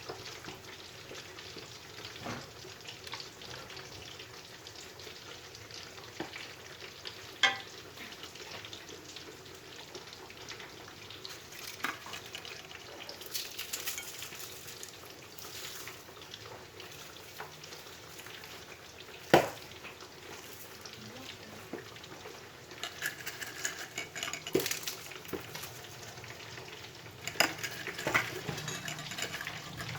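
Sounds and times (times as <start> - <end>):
food sizzling in hot oil: 0.0 - 29.9.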